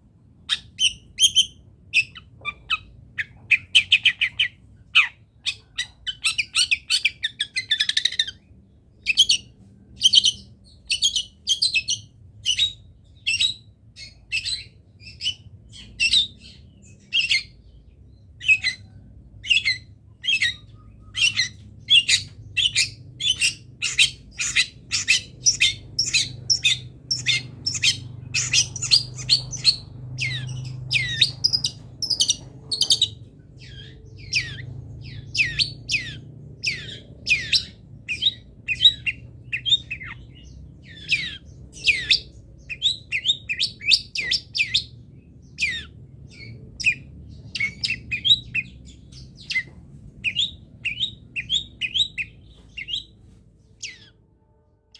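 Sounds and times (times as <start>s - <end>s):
faint low hum: 0.0s - 54.9s
bird rapid chattering: 19.4s - 44.9s.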